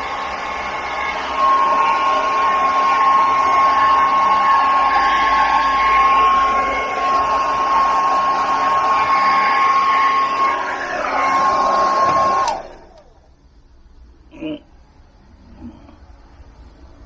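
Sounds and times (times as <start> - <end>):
blow dryer running: 0.0 - 13.3.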